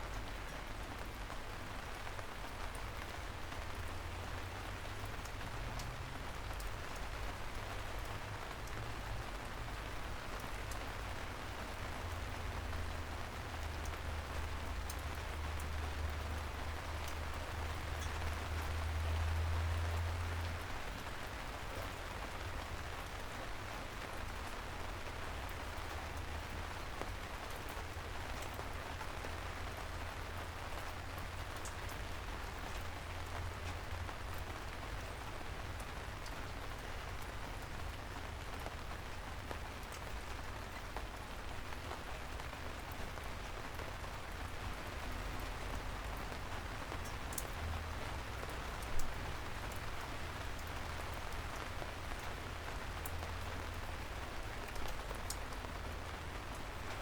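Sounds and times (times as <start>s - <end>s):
soft rain falling: 0.0s - 57.0s.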